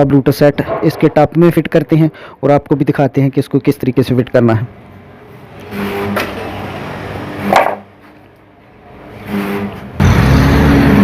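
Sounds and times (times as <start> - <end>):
loud steady noise: 4.5 - 11.0
plastic and metal parts scraping: 7.4 - 8.2.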